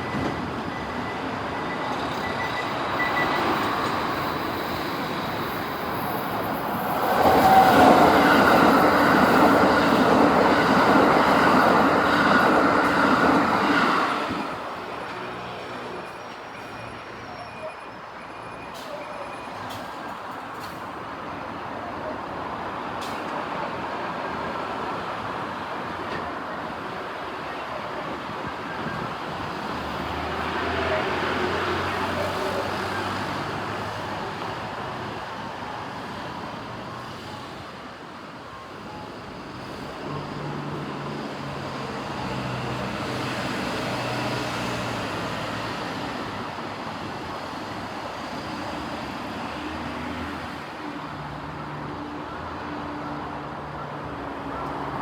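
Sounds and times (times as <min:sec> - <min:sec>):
heavy vehicle engines: 0:00.0 - 0:55.0
road traffic passing: 0:27.2 - 0:55.0.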